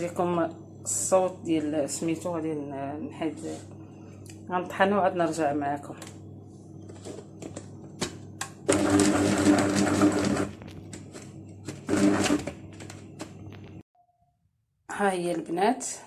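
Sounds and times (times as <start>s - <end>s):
electric grinder running: 8.7s - 10.5s, 11.8s - 12.6s.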